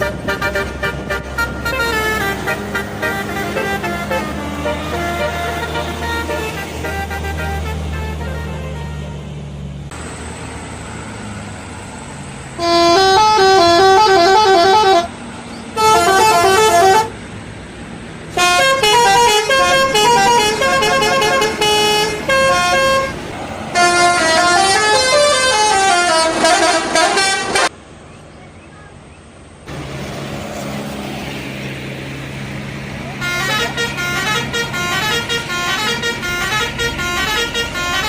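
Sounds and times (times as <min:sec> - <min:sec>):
multi-trumpet bus horn tunes: 0:00.0 - 0:09.4, 0:12.6 - 0:17.2, 0:18.3 - 0:27.8, 0:33.2 - 0:38.0.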